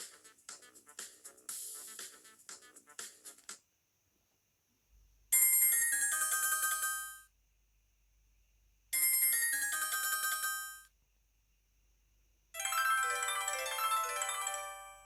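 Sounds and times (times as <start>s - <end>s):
phone ringtone chiming melody: 5.4s - 7.3s, 9.0s - 10.9s, 12.6s - 15.0s.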